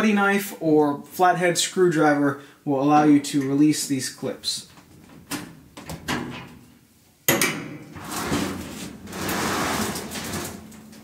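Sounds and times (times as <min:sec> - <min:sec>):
sheet metal scraping: 0:07.6 - 0:11.0.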